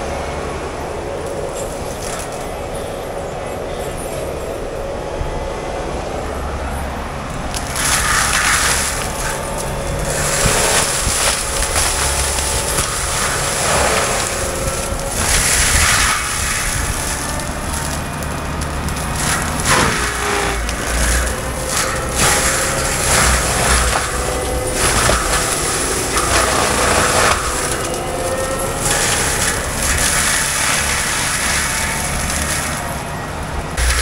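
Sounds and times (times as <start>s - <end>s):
mulcher grinding and shredding brush: 0.0s - 5.4s, 6.2s - 34.0s
diesel engine drone: 0.0s - 34.0s.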